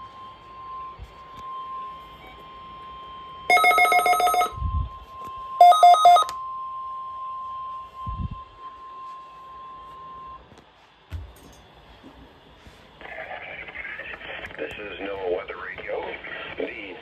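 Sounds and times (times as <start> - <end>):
pulsing electronic ringing: 0.0 - 4.6, 5.5 - 10.4
steady alarm tone: 0.0 - 10.9.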